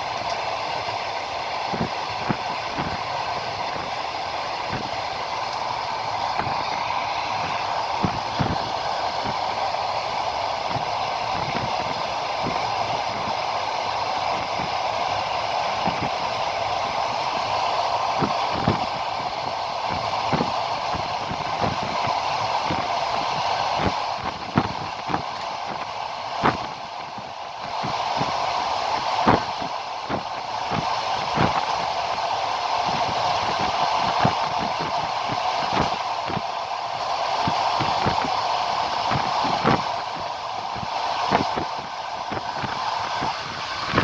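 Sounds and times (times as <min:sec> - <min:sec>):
train running: 0:00.0 - 0:44.0.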